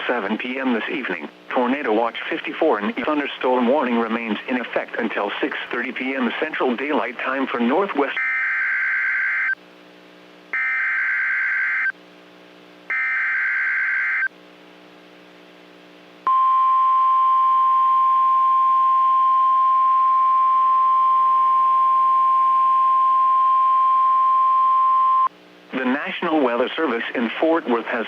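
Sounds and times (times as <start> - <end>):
steady warning alarm tone: 10.6 - 11.9, 12.9 - 14.3.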